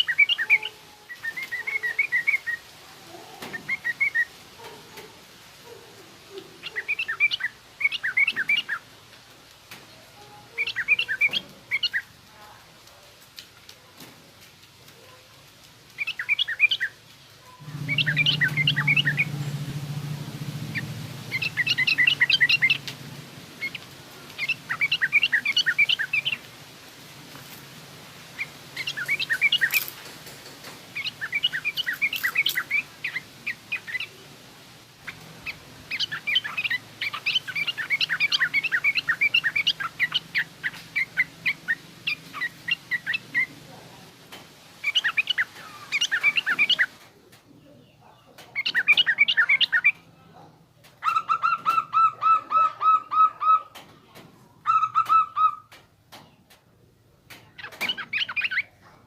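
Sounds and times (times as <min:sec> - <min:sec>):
bulbul chattering calls: 0:17.5 - 0:19.6, 0:20.7 - 0:22.9, 0:23.6 - 0:26.4, 0:28.4 - 0:29.9, 0:31.0 - 0:34.2, 0:35.0 - 0:43.5, 0:44.8 - 0:46.9
low hum: 0:17.6 - 0:23.9.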